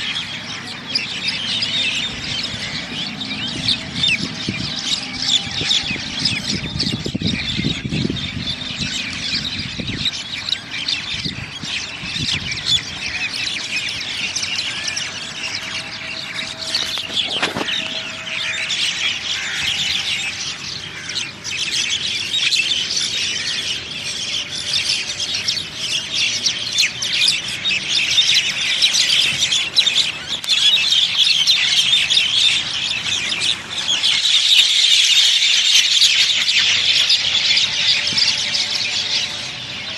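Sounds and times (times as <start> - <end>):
flock of birds squawking: 0.0 - 39.9.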